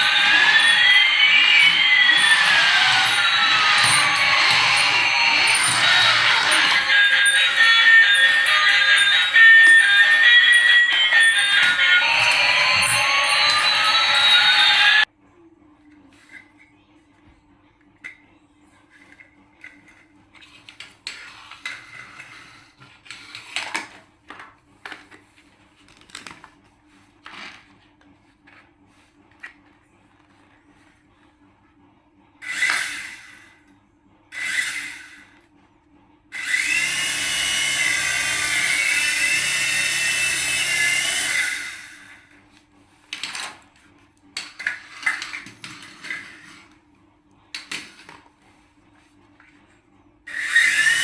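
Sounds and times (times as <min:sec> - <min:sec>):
small electric motor whirring: 0:00.0 - 0:15.0, 0:32.4 - 0:33.4, 0:34.4 - 0:35.3, 0:36.4 - 0:42.1, 0:50.3 - 0:51.0.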